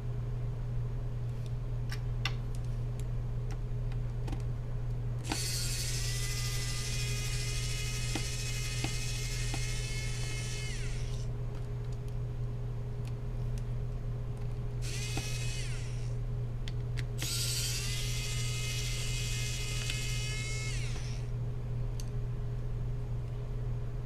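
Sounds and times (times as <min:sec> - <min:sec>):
steady low hum: 0:00.0 - 0:24.0
electric screwdriver motor whining: 0:05.3 - 0:11.2, 0:14.8 - 0:16.2, 0:17.2 - 0:21.3.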